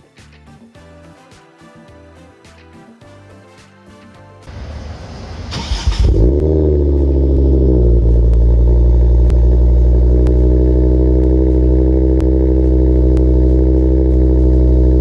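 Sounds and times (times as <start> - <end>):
car engine starting and idling: 4.5 - 15.0.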